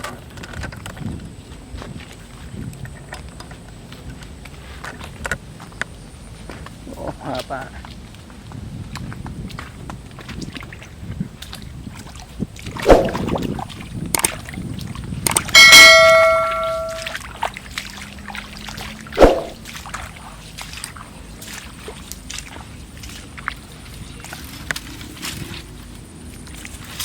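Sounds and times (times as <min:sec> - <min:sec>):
metal object ringing: 0:15.6 - 0:17.2, 0:19.2 - 0:19.6.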